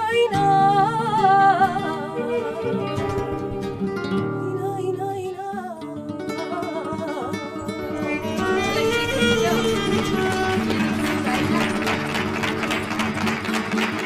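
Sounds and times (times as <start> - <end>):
flamenco guitar carol music: 0.0 - 14.0
wavering lead melody: 6.5 - 13.0.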